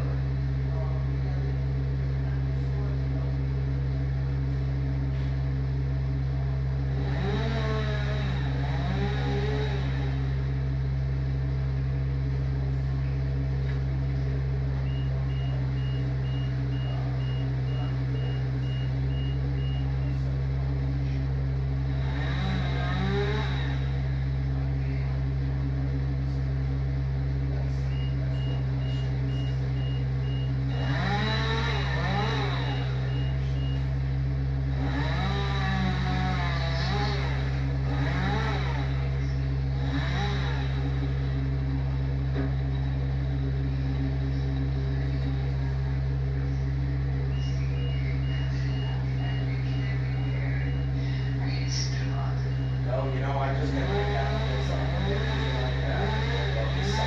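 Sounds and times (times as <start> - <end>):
low engine drone: 0.0 - 57.0
rapid high-pitched beeping: 47.3 - 53.0.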